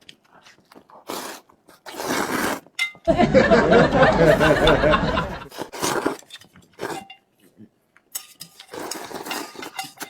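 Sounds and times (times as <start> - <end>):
person snickering laugh: 3.1 - 5.5.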